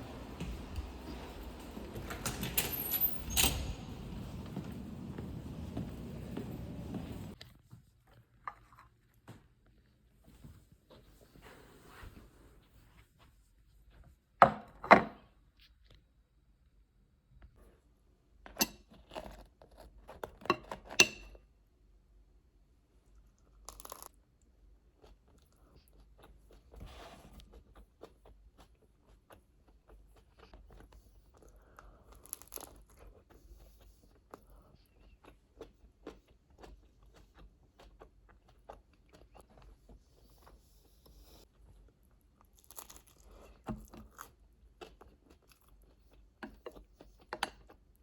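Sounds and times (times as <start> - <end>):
person chewing crunchy food: 27.5 - 40.0, 42.4 - 48.0.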